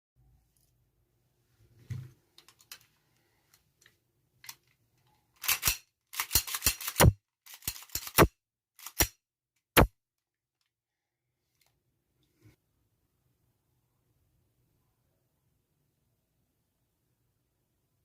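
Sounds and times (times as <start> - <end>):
air pistol shots snapping: 5.4 - 9.2.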